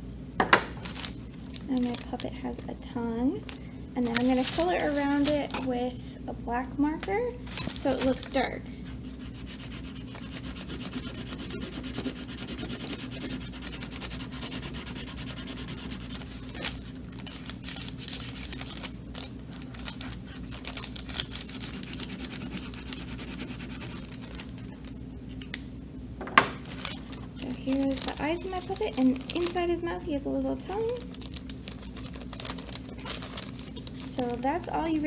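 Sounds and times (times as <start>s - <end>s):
marker scratching on paper: 8.8s - 17.0s, 21.2s - 24.3s.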